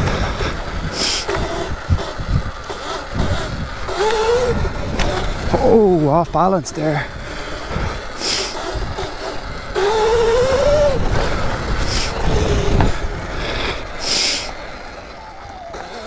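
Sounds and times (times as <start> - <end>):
electric motor whine: 0.0 - 16.0
wind buffeting microphone: 0.0 - 16.0
short hissing bursts: 0.9 - 4.6, 7.0 - 14.8.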